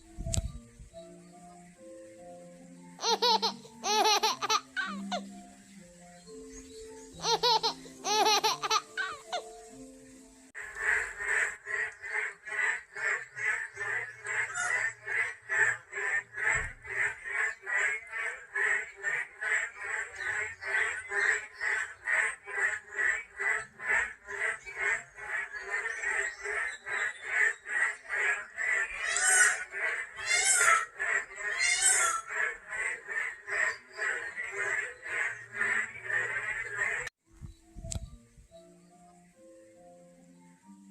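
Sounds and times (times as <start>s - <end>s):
frogs croaking in chorus: 1.0s - 37.1s
higher rasping frog calls: 10.6s - 37.1s.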